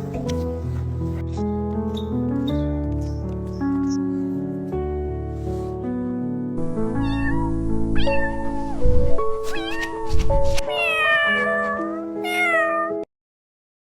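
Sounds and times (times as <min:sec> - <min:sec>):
gentle background music: 0:00.0 - 0:13.1
kitten meowing: 0:07.0 - 0:13.0.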